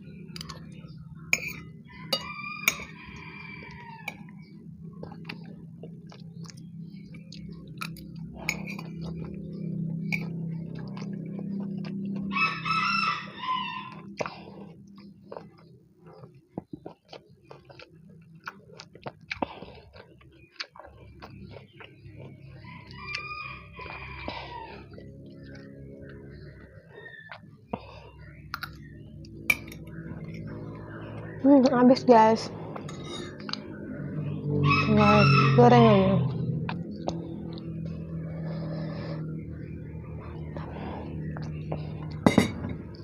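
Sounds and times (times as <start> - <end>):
eating sounds: 0.0 - 43.0
low steady hum: 0.0 - 43.0
rooster crowing: 1.9 - 4.3, 12.2 - 14.1, 22.6 - 24.8, 34.4 - 36.4.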